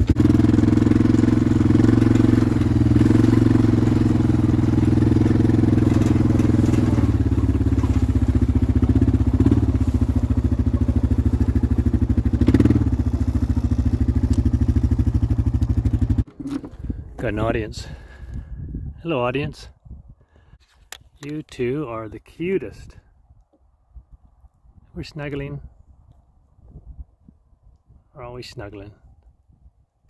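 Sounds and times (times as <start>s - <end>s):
small vehicle engine running: 0.0s - 16.8s.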